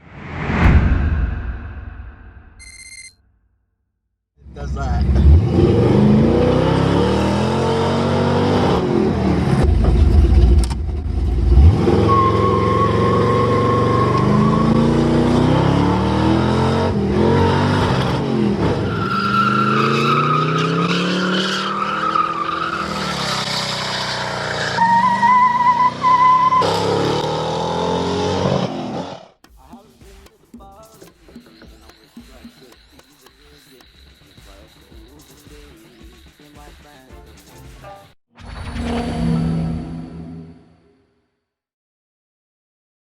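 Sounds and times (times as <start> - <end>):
car engine revving: 4.4 - 29.4
high squealing tones: 11.9 - 15.1.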